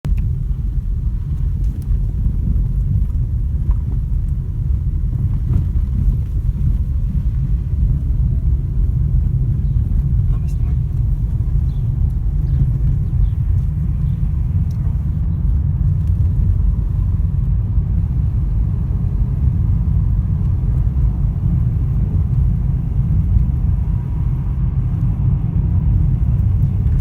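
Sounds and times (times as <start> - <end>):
road and tyre rumble: 0.0 - 27.0.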